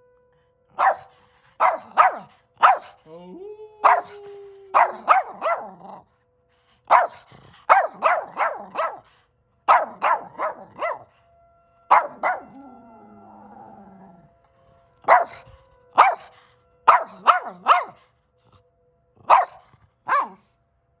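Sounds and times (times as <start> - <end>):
dog barking: 0.7 - 3.0, 3.8 - 6.0, 6.9 - 11.1, 11.9 - 12.6, 15.1 - 15.4, 16.0 - 16.3, 16.9 - 18.0, 19.2 - 20.5.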